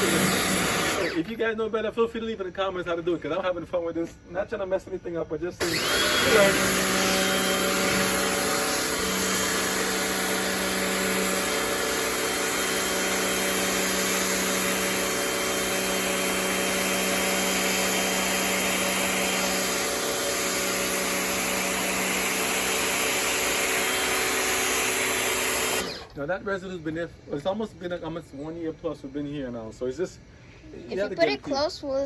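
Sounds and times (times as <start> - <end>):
pressure washer motor humming: 0.0 - 1.3, 5.6 - 26.2.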